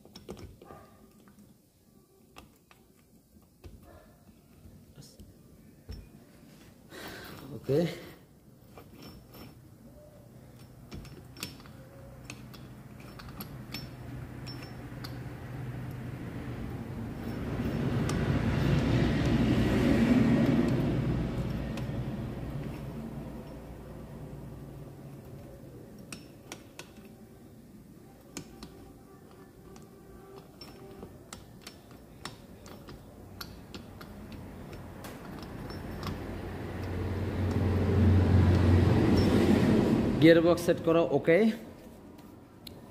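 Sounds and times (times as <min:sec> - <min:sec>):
metal parts clicking and tapping: 0:00.0 - 0:01.4, 0:08.7 - 0:09.7, 0:10.4 - 0:16.1, 0:17.1 - 0:19.4, 0:21.4 - 0:23.9, 0:25.1 - 0:27.3, 0:28.2 - 0:39.3
low steady hum: 0:00.0 - 0:40.2.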